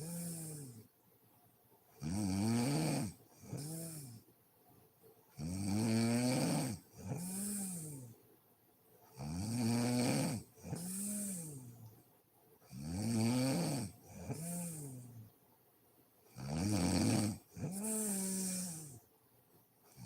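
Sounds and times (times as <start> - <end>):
woman snoring: 0.0 - 0.8, 2.0 - 4.2, 5.4 - 8.2, 9.2 - 11.7, 12.7 - 15.2, 16.4 - 19.0.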